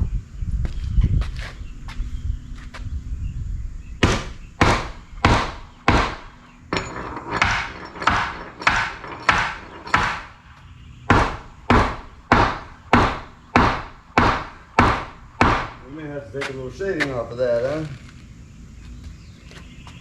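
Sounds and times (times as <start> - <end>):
hammer striking wooden board: 4.0 - 6.3, 7.4 - 10.3, 11.1 - 15.8.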